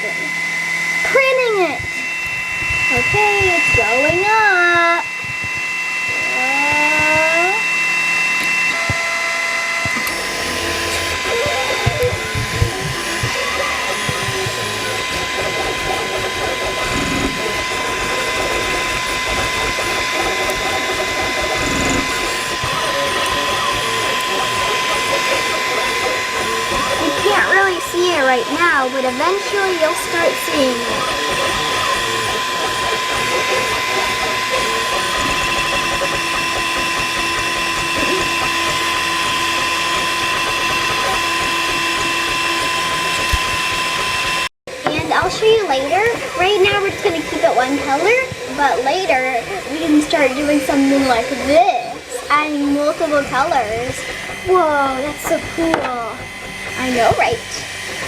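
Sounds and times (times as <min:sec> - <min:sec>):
high-pitched whine: 0:00.0 - 0:58.0
stepper motors whirring and chattering: 0:00.0 - 0:58.0
low hum: 0:00.4 - 0:28.9.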